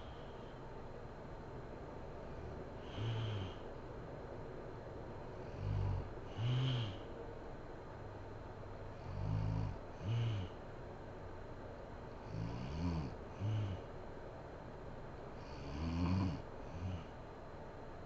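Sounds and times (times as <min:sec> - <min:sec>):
steady background hiss: 0:00.0 - 0:18.0
woman snoring: 0:02.8 - 0:03.6, 0:05.4 - 0:07.1, 0:09.0 - 0:10.6, 0:12.2 - 0:13.9, 0:15.4 - 0:17.1.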